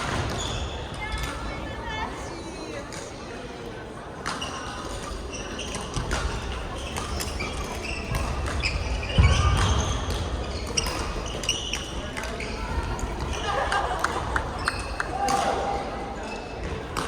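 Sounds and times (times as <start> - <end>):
shoes squeaking on floor: 4.2 - 13.4
rackets hitting shuttlecock: 5.7 - 12.4.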